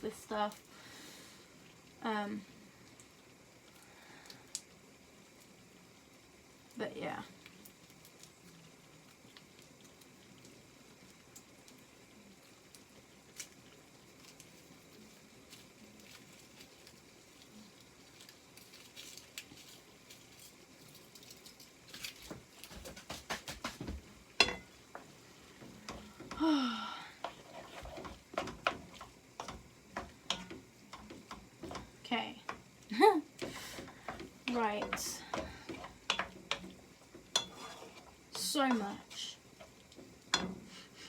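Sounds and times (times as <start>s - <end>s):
pans simmering: 0.0s - 41.0s
kitchen clicks and knocks: 22.3s - 26.4s, 27.2s - 32.7s, 33.4s - 38.9s, 39.6s - 40.7s.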